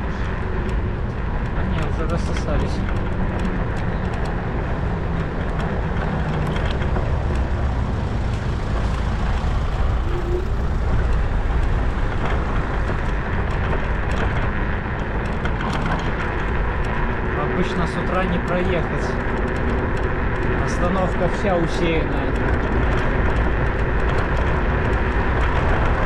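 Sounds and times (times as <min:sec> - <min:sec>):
motorcycle engine and road noise: 0:00.0 - 0:26.0
faint light ticks: 0:17.7 - 0:26.0.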